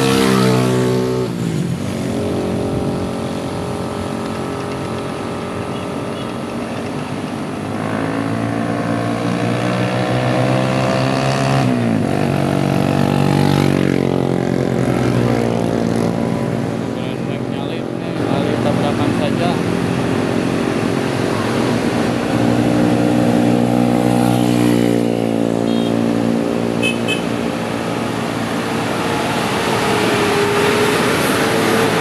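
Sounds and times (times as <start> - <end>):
truck diesel engine labouring: 26.2 - 32.0.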